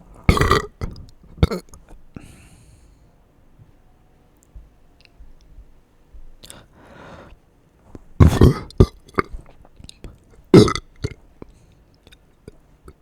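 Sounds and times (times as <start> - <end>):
person belching: 0.3 - 1.7, 8.2 - 9.4, 10.5 - 11.2
breathy sound: 6.4 - 7.4
wet mouth clicks: 7.9 - 13.0.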